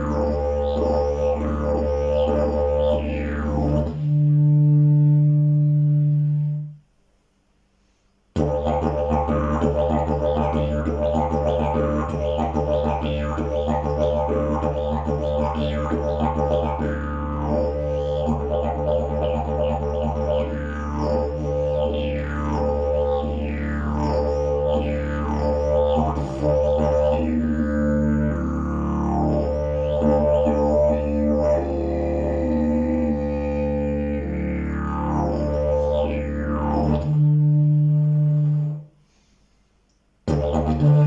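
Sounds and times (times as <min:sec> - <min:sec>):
didgeridoo drone: 0:00.0 - 0:06.6, 0:08.4 - 0:38.8, 0:40.3 - 0:41.0.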